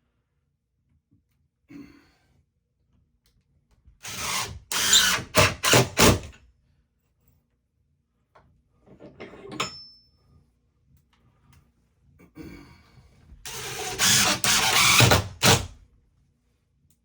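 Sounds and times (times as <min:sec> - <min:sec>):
rasp strokes on wood: 0:13.5 - 0:15.7.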